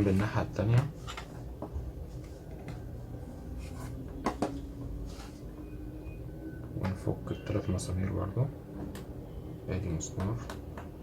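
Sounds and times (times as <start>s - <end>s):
low steady hum: 0.0s - 11.0s
light clicks and taps: 10.1s - 11.0s.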